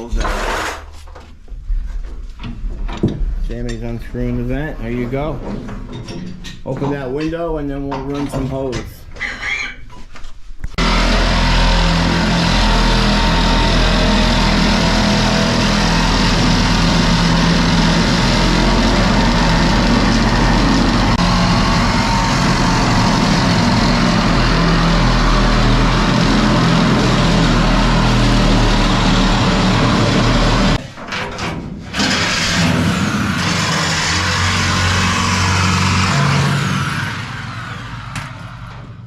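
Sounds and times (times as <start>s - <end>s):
engine running steadily: 10.8s - 30.8s.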